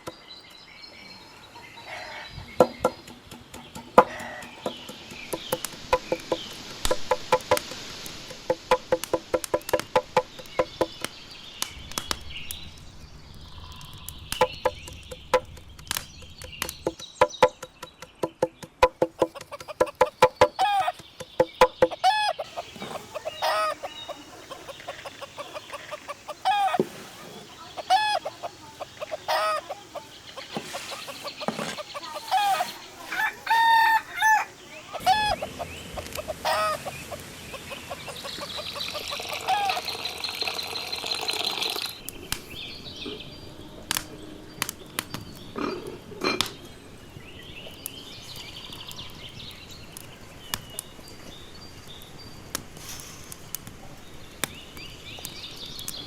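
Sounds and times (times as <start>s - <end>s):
chickens clucking and squawking: 1.2s - 11.0s, 18.8s - 41.2s.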